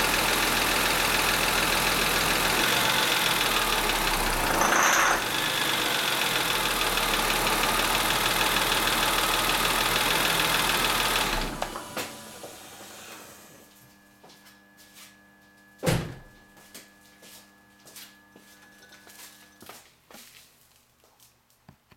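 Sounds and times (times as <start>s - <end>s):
car engine idling: 0.0s - 11.8s.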